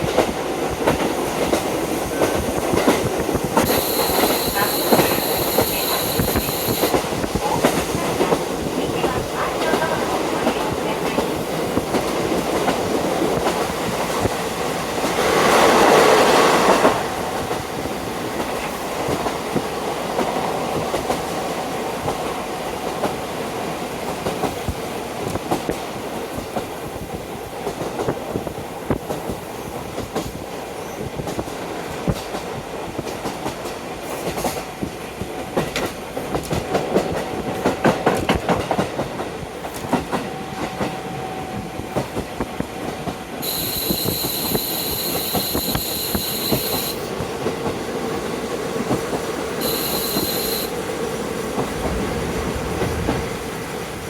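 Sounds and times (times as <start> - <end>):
faint steady squeal: 3.6 - 7.0, 43.4 - 47.1, 49.6 - 50.8
train wheels clicking over rail joints: 41.8 - 50.7
wind noise: 51.0 - 54.0.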